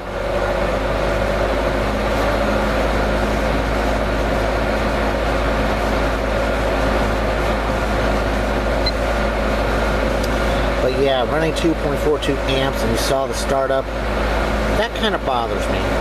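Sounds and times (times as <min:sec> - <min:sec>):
box fan rushing air: 0:00.0 - 0:16.0
low electrical hum and buzz: 0:00.0 - 0:16.0.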